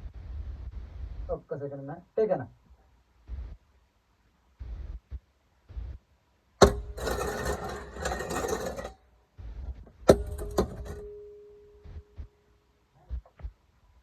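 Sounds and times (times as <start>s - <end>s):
metallic clang ringing: 6.6s - 8.9s, 10.1s - 12.2s
rattling metal scrape: 6.6s - 9.0s, 10.0s - 11.5s.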